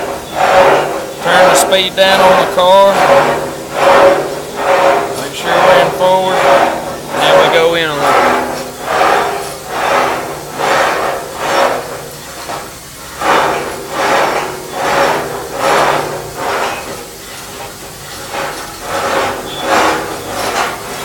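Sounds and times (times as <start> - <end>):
low machine hum: 0.0 - 21.0
steel scraping inside spinning pipe: 0.0 - 21.0.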